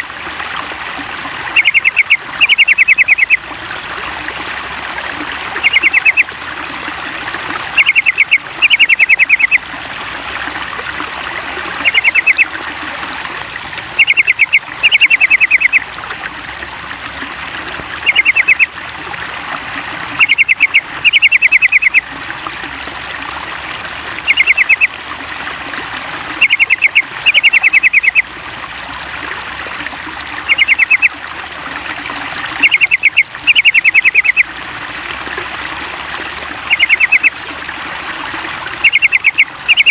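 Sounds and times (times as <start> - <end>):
trickling water: 0.0 - 39.9
bulbul song: 1.4 - 3.5, 5.5 - 6.4, 7.7 - 9.7, 11.6 - 13.1, 13.8 - 16.0, 18.0 - 18.8, 20.1 - 22.2, 24.2 - 25.0, 26.3 - 28.4, 30.3 - 31.2, 32.4 - 34.6, 36.5 - 37.4, 38.6 - 39.9.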